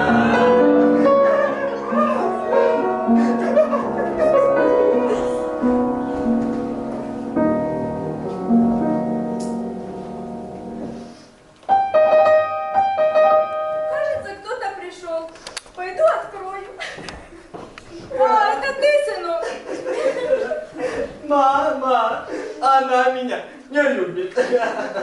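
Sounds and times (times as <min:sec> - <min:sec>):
piano music: 0:00.0 - 0:14.7.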